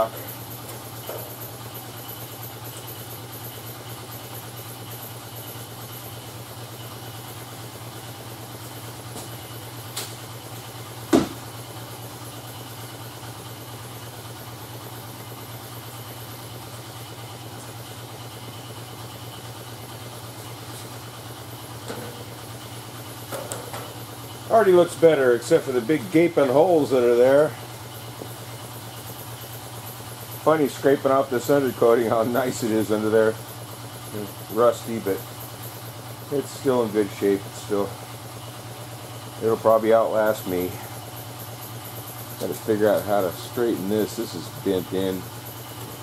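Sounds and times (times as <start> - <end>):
shop machinery humming: 0.0 - 46.0.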